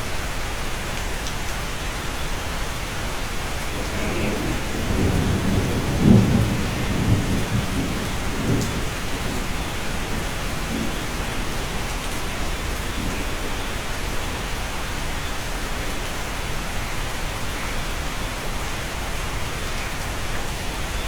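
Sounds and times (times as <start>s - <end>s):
steady rain: 0.0s - 21.0s
low roll of thunder: 3.6s - 15.0s.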